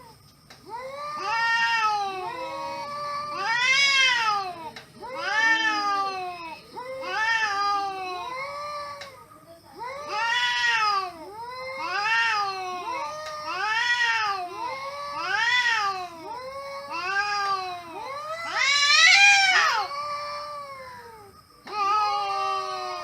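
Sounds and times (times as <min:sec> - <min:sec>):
cat meowing: 0:00.7 - 0:08.5, 0:16.9 - 0:20.0.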